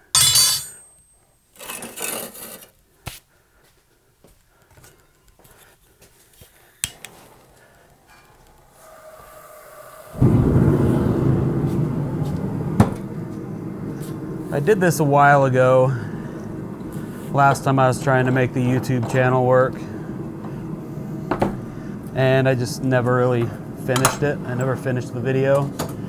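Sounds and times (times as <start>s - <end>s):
metal scraping: 0.0s - 1.0s
sharp metal knocks: 0.0s - 1.0s
workshop machine humming: 6.8s - 26.0s.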